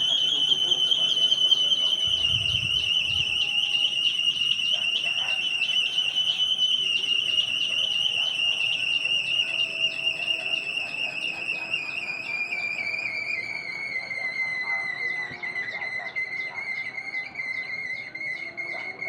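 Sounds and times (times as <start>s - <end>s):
wind propeller whistling: 0.0s - 19.0s
strong wind: 1.9s - 3.6s.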